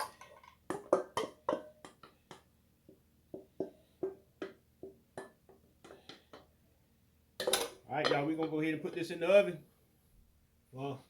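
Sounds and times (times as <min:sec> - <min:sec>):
spoon tapping against a dish: 0:00.0 - 0:06.5.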